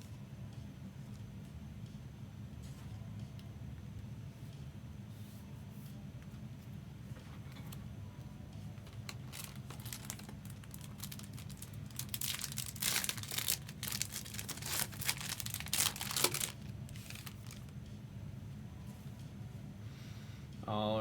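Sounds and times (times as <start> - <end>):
steady low hum: 0.0 - 21.0
wrapper tearing and crinkling: 9.0 - 17.7.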